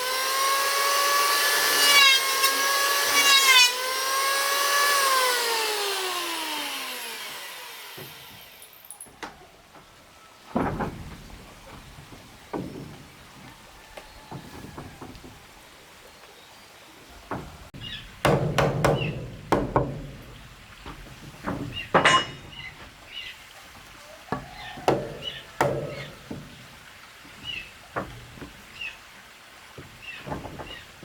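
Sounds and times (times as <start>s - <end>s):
heavy blows striking wood: 17.3s - 22.7s, 24.4s - 26.6s.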